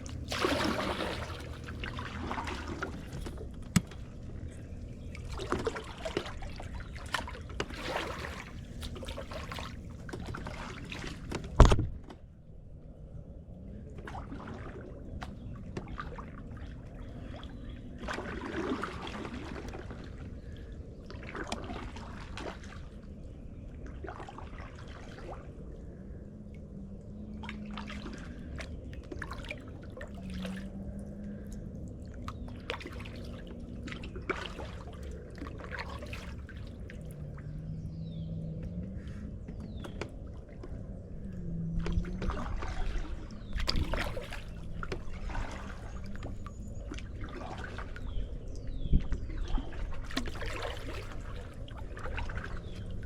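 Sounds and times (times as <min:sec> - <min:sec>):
paddle splashing in water: 0:00.0 - 0:12.2, 0:14.0 - 0:23.0, 0:23.9 - 0:25.6, 0:27.5 - 0:30.8, 0:32.2 - 0:37.6, 0:38.4 - 0:53.0
steady low rumble: 0:00.0 - 0:53.0
water trickling drips: 0:27.5 - 0:37.8.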